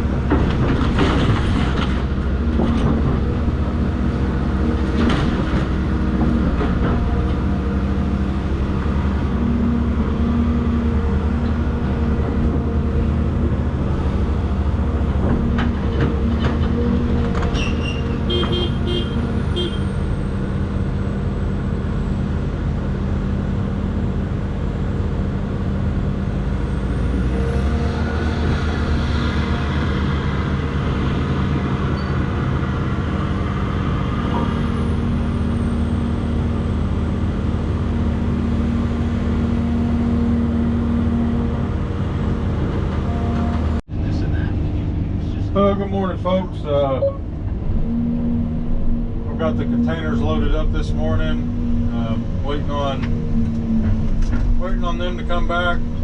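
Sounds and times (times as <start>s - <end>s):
metal knocks and clanks: 0.0s - 3.5s
excavator diesel engine running: 0.0s - 56.0s.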